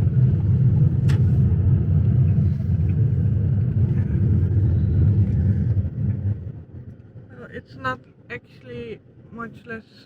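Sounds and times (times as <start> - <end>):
car road noise rumble: 0.0 - 10.0.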